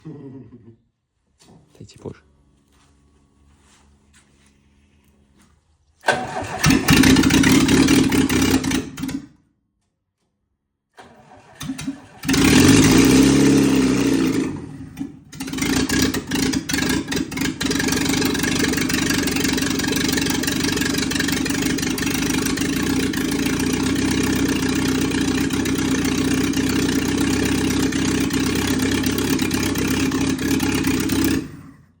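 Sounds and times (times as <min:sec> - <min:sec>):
petrol engine starting and revving: 0:02.0 - 0:09.4, 0:11.0 - 0:32.0.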